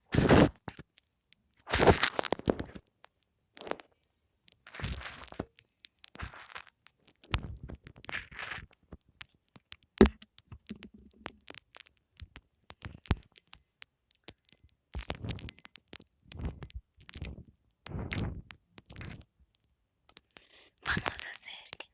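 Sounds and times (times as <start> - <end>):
foam crunching and crackling: 1.6 - 2.8, 4.6 - 8.7
sharp clicks: 4.5 - 21.9.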